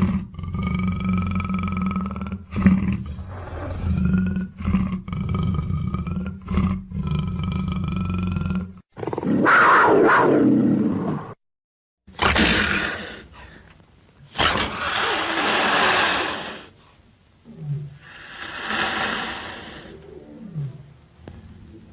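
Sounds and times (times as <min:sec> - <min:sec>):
big cat growling: 0:00.0 - 0:11.0.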